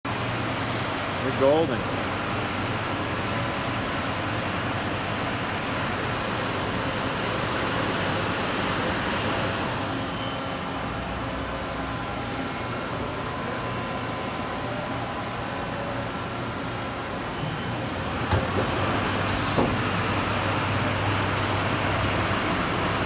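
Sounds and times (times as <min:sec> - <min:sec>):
machine tool humming and hissing: 0:17.2 - 0:23.0.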